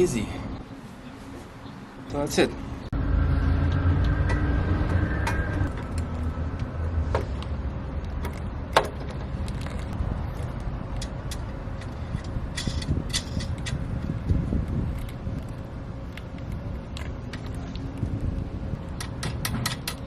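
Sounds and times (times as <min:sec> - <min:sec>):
low engine rumble: 0:00.0 - 0:20.0
sharp clicks and knocks: 0:18.8 - 0:20.0.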